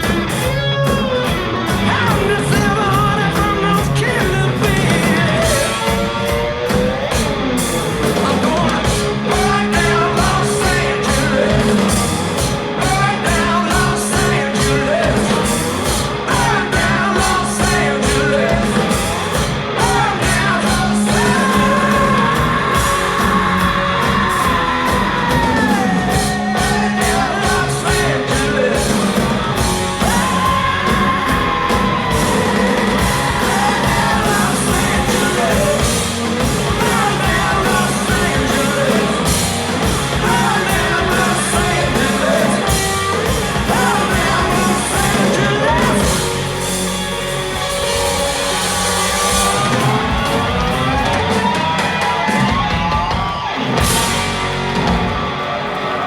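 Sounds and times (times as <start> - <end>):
live rock band: 0.0 - 56.0.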